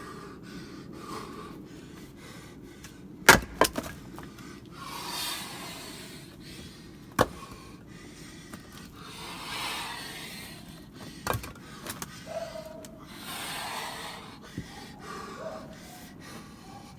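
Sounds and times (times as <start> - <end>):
heavy breathing: 0.0 - 3.2, 4.1 - 16.9
axe striking firewood: 3.2 - 4.3, 7.1 - 7.6, 11.2 - 12.1.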